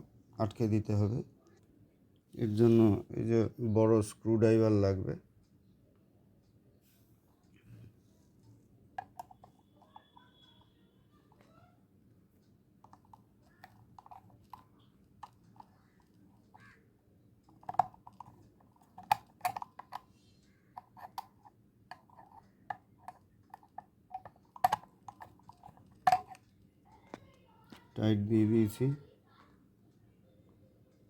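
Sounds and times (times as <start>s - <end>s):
screwdriver clicks on metal screw: 18.9s - 20.0s, 20.8s - 26.4s.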